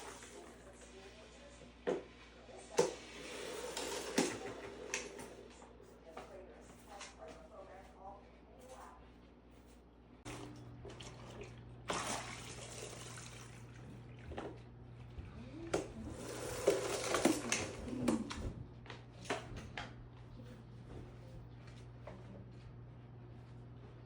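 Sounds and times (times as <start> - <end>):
water running from a tap: 0.0 - 0.7, 10.9 - 13.8.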